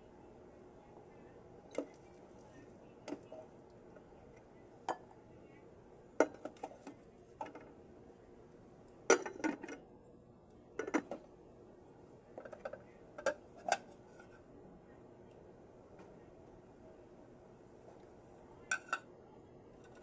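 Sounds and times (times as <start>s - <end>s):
cutlery clinking on a plate: 18.7s - 19.0s.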